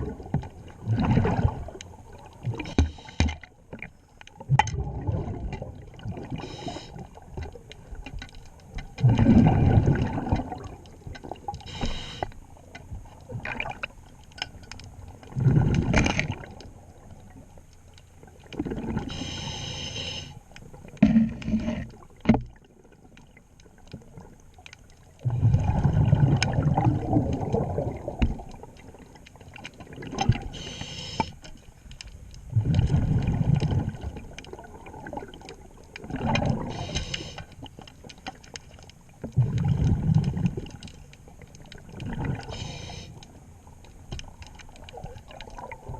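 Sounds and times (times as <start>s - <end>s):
exhaled air bubbling: 0.0s - 7.9s, 8.8s - 12.2s, 13.1s - 14.0s, 15.0s - 17.4s, 18.2s - 31.3s, 32.4s - 41.0s, 41.6s - 45.9s
scuba regulator breathing: 6.4s - 7.0s, 11.7s - 12.4s, 19.1s - 20.4s, 30.5s - 31.4s, 36.6s - 37.6s, 42.4s - 43.2s.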